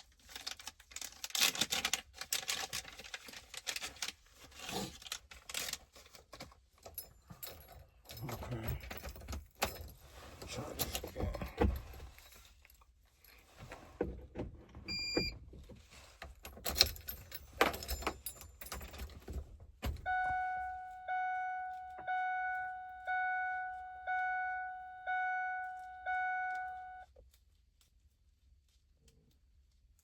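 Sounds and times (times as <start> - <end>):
keys jangling in ignition: 6.8 - 12.9, 16.5 - 27.0
dashboard warning chime: 14.9 - 15.3, 20.0 - 27.1.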